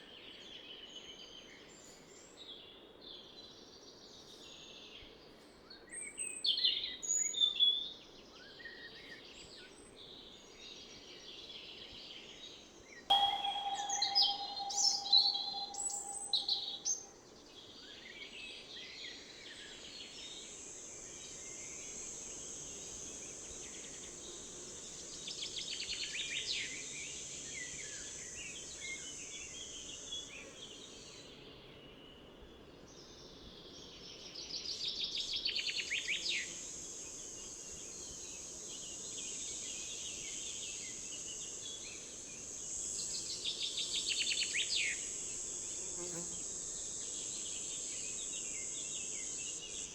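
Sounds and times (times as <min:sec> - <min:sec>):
songbirds singing: 0:13.1 - 0:16.9.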